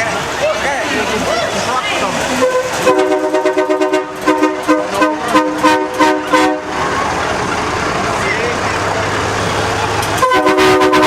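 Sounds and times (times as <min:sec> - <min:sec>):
train horn blasts and toots: 0:02.4 - 0:06.8, 0:10.2 - 0:11.0.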